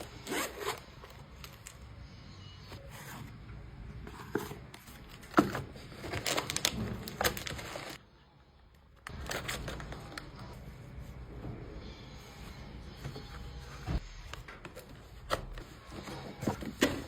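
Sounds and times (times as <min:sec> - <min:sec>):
packaging rustling: 0:04.2 - 0:08.0, 0:09.1 - 0:10.5.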